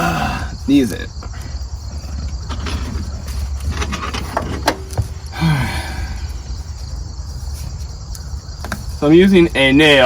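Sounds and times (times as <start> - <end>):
person grunting: 0.0 - 0.5, 5.3 - 6.2
steady low hum: 0.0 - 10.0.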